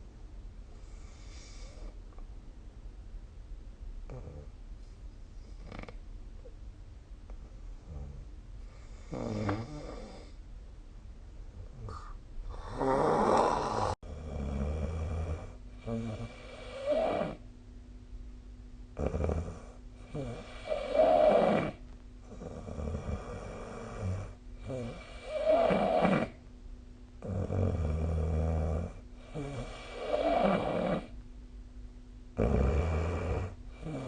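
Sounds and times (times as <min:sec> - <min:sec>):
person snoring: 0:08.8 - 0:10.4, 0:11.8 - 0:17.4, 0:19.0 - 0:26.4, 0:27.2 - 0:31.2, 0:32.4 - 0:34.0.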